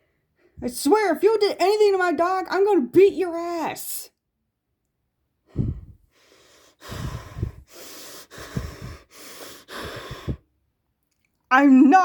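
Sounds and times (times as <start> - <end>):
person breathing heavily: 5.4 - 10.6.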